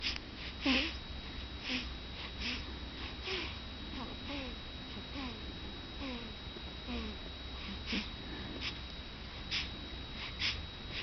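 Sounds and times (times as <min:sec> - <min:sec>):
baby snoring: 0:00.6 - 0:01.0, 0:01.6 - 0:05.4, 0:06.0 - 0:06.3, 0:06.9 - 0:08.1.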